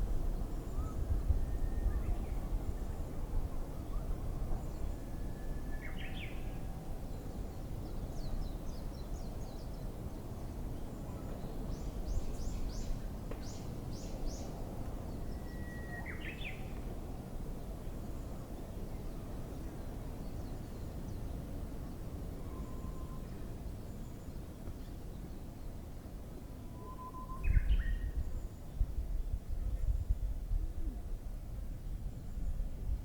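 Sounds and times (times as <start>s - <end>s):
low rumble of outdoor noise: 0.0s - 33.0s
bush warbler whistled song: 4.7s - 6.6s, 11.4s - 16.8s, 22.4s - 25.4s, 26.7s - 28.8s.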